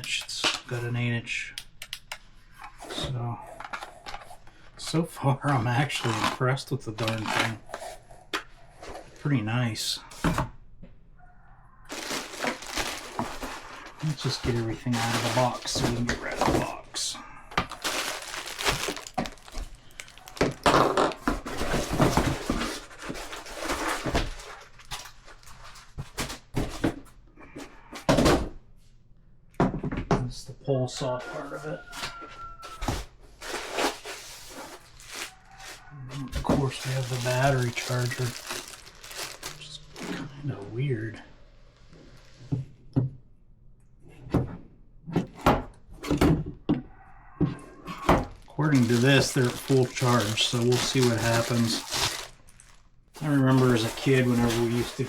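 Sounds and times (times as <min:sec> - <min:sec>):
cardboard packaging rustling: 0:05.4 - 0:07.8, 0:11.9 - 0:26.9, 0:31.8 - 0:40.5, 0:48.0 - 0:55.0
plastic parts knocking: 0:11.9 - 0:16.8, 0:17.5 - 0:25.1, 0:48.0 - 0:55.0.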